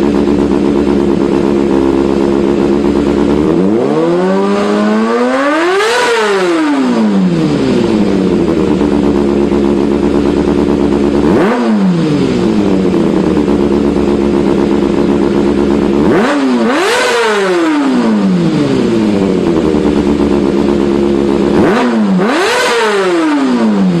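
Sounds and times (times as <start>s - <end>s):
motorcycle engine revving: 0.0s - 24.0s.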